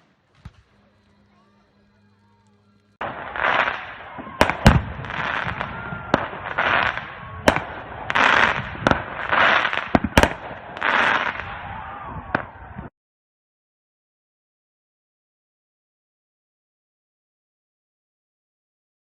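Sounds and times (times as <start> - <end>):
fireworks hissing: 0.0 - 12.7
fireworks bangs: 0.0 - 12.9.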